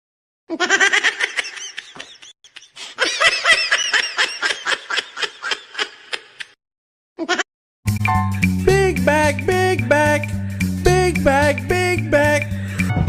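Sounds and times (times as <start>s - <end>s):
high-pitched giggling: 0.5s - 6.6s, 7.2s - 7.5s.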